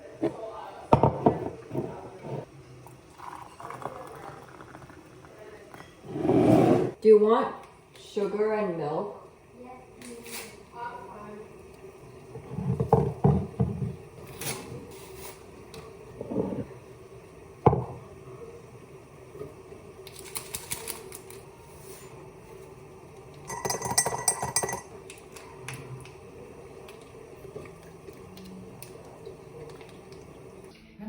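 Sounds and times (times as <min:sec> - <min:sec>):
mugs and teaspoons clinking: 0:03.2 - 0:07.0, 0:12.1 - 0:30.7.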